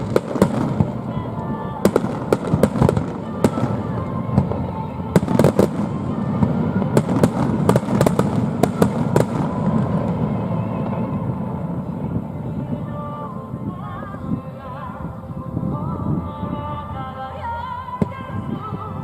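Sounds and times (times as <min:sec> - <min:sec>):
fireworks crackling bangs: 0:00.0 - 0:13.9.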